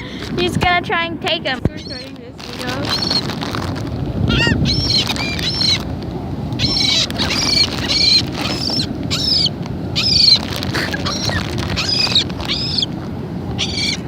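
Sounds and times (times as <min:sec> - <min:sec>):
steady low background noise: 0:00.0 - 0:14.0
seagulls calling: 0:01.6 - 0:03.4, 0:04.2 - 0:14.0.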